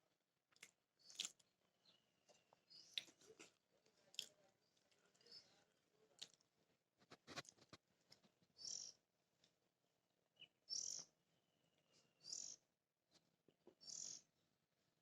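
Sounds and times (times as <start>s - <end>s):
faint bird calls: 8.6s - 9.0s, 10.4s - 12.6s, 13.7s - 14.3s.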